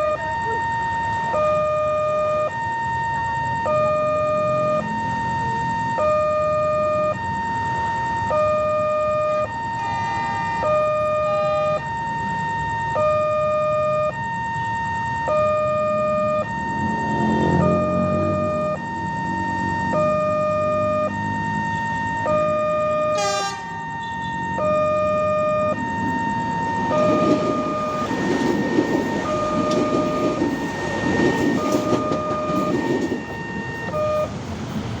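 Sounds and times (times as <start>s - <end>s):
two-tone level crossing siren: 0.0s - 34.9s
train wheels rumbling on rails: 25.8s - 35.0s.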